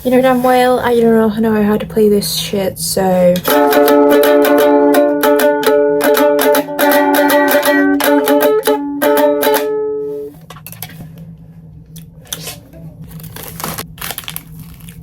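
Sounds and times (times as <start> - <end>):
ukulele strummed quickly: 3.5 - 10.3.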